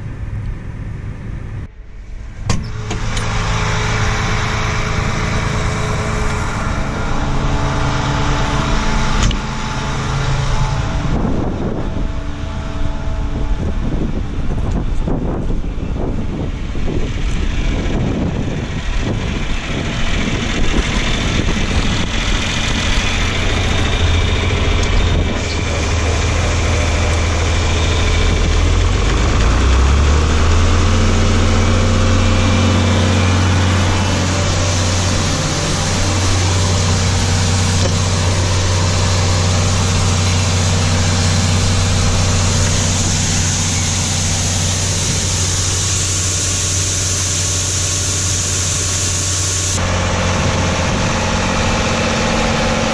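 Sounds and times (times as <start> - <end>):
engine running: 0.0 - 52.9.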